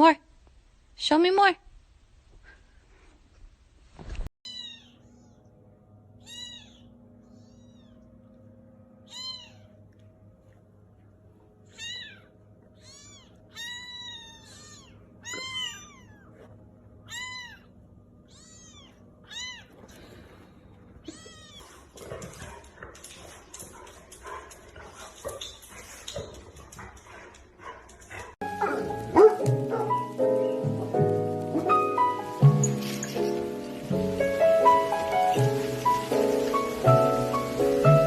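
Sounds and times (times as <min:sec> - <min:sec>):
small pet crying calls: 0:04.5 - 0:05.4, 0:06.2 - 0:08.1, 0:09.0 - 0:09.8, 0:11.7 - 0:16.4, 0:17.0 - 0:19.7, 0:21.0 - 0:21.6
faint steady hum: 0:04.5 - 0:24.9.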